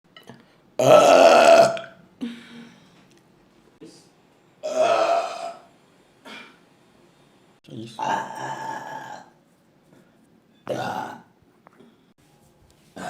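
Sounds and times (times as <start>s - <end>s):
woman burping loudly: 0.8s - 2.0s, 4.6s - 5.7s.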